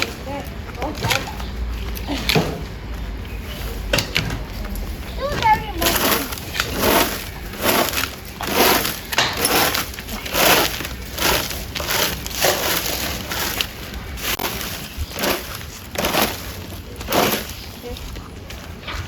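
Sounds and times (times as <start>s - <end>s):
dry twigs crunching: 3.1s - 19.0s.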